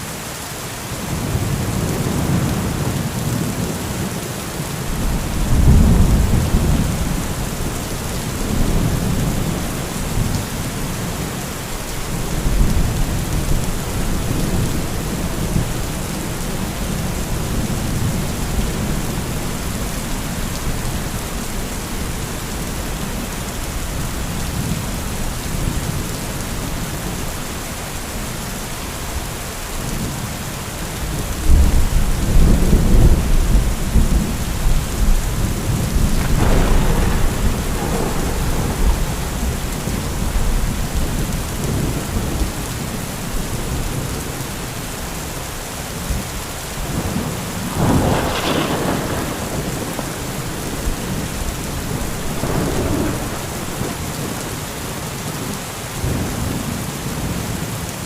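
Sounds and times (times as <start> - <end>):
heavy rain: 0.0 - 58.0
thunder rumbling: 4.8 - 28.0, 31.0 - 44.6, 46.1 - 54.7.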